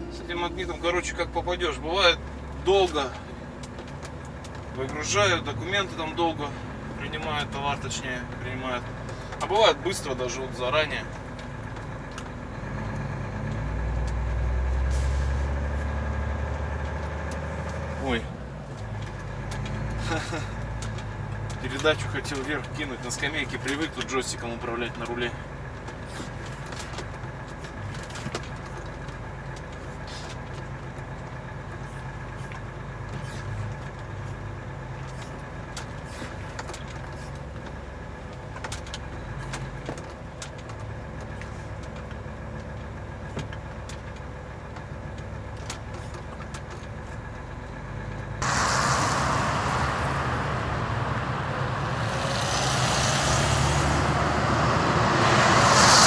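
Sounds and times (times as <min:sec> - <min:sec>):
diesel engine running: 0:00.0 - 0:56.0
small clicks and rattles: 0:16.6 - 0:48.4
loud rushing noise: 0:48.4 - 0:56.0.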